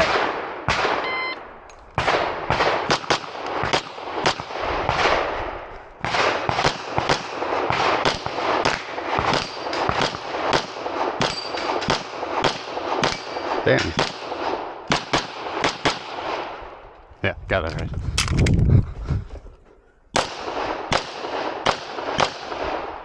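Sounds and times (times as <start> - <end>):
pistol shots: 0.0 - 16.6, 20.1 - 23.0
shot timer beep: 1.0 - 1.4.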